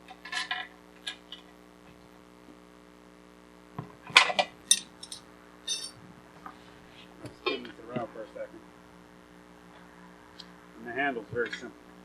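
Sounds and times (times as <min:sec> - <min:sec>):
steady electrical hum: 0:00.0 - 0:12.0
metal tools and washers clinking: 0:04.2 - 0:06.0.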